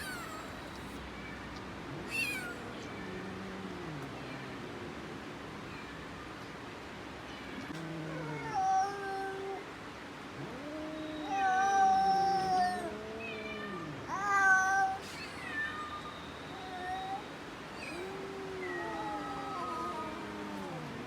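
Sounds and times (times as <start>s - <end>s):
cat meowing: 0.0s - 1.0s, 1.9s - 4.6s, 10.4s - 21.0s.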